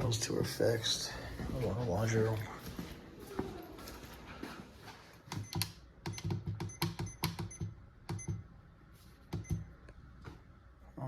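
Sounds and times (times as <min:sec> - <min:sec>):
footsteps on hard floor: 0:01.2 - 0:05.2.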